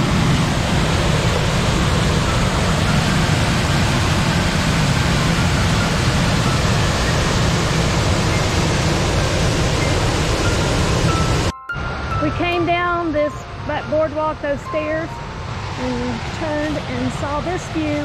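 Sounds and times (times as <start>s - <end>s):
small waterfall rushing: 0.0s - 11.5s.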